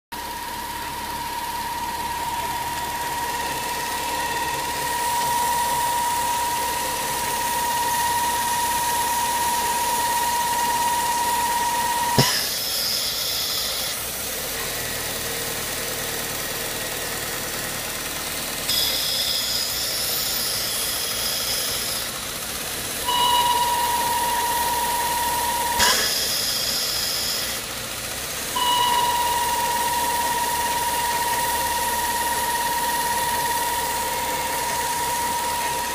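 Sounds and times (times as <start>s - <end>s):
car engine running: 0.1s - 35.9s
high-pitched squeal: 0.2s - 14.2s, 18.7s - 22.2s, 23.0s - 27.7s, 28.5s - 35.9s
hiss: 12.2s - 14.2s, 18.6s - 22.3s, 25.8s - 27.8s.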